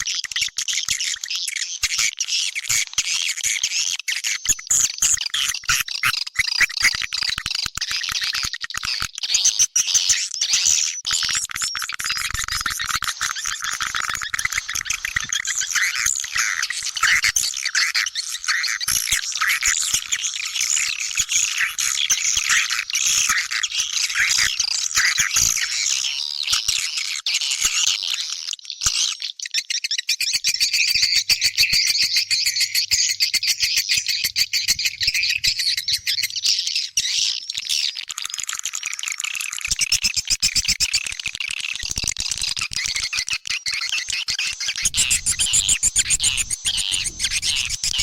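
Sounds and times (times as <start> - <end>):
swiftlet chirps and twitters: 30.3 - 40.9.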